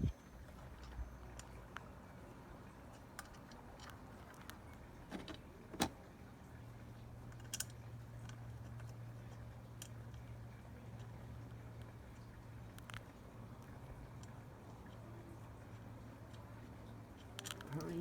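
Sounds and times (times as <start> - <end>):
low steady hum: 0.0 - 18.0
clicks and knocks of metal parts: 7.3 - 10.3.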